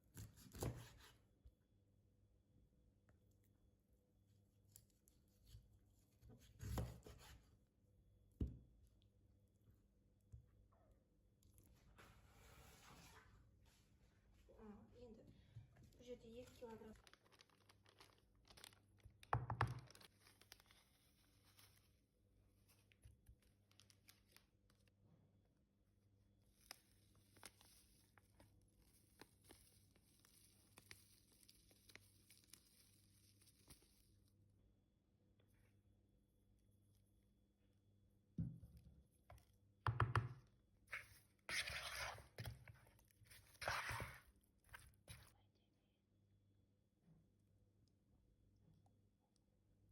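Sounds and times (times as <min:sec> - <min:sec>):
faint clicks and crinkles: 0:15.7 - 0:25.0, 0:26.4 - 0:34.4.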